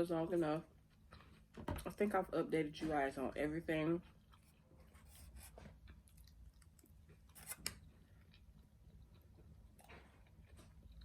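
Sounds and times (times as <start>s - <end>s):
person chewing: 5.8s - 11.0s.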